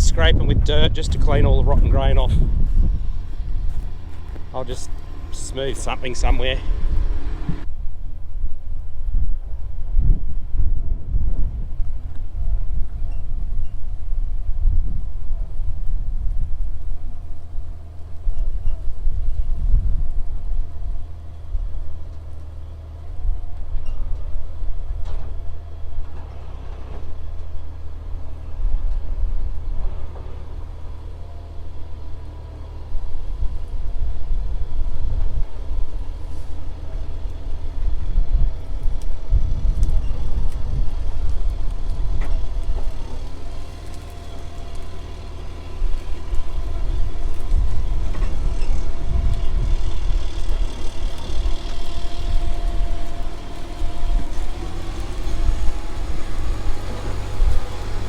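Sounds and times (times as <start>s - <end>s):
machine scraping dirt: 0.0s - 7.7s, 20.6s - 58.0s
heavy machine engine rumble: 0.0s - 58.0s.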